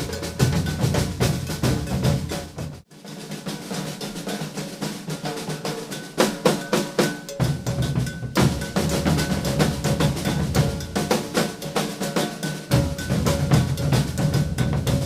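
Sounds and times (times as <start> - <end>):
snare drum strokes: 0.0 - 15.0
deep bass drums: 7.5 - 11.1, 12.7 - 15.0.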